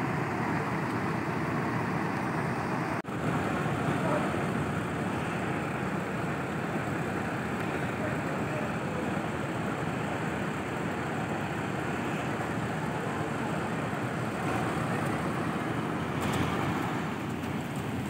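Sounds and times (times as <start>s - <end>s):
buses and vehicles running: 0.0s - 18.0s.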